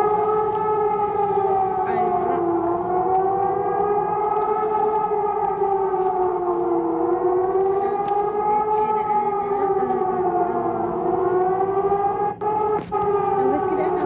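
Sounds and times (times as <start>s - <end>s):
civil defence siren wavering: 0.0s - 14.0s.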